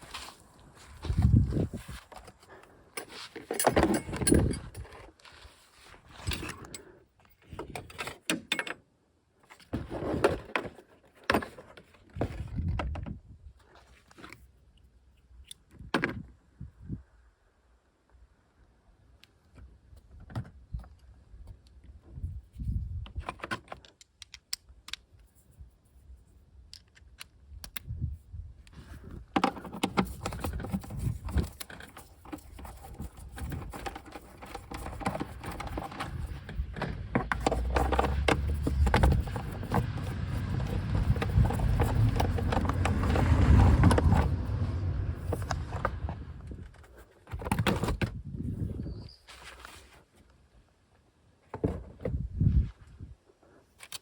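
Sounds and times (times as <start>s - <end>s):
tools and metal parts clattering: 2.9s - 5.2s, 6.1s - 8.8s, 29.4s - 44.3s
rustling: 28.7s - 47.9s.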